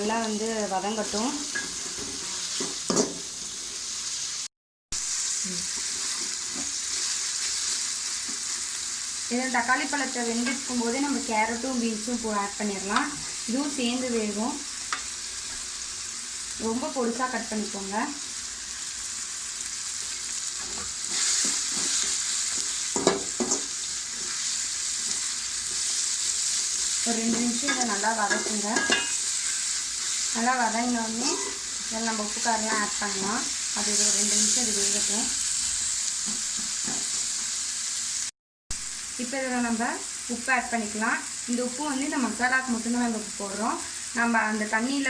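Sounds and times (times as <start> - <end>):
vegetables sizzling in a pan: 0.0 - 45.0
spatula scraping pan: 1.0 - 3.7, 20.6 - 30.4, 31.1 - 37.6
stirring scrapes: 20.6 - 22.6.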